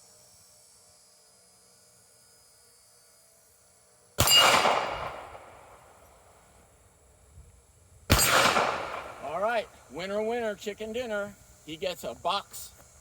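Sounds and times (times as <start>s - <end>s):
steel target ringing: 4.2s - 5.5s, 8.1s - 9.2s
pistol shot: 4.2s - 6.0s, 8.1s - 9.5s.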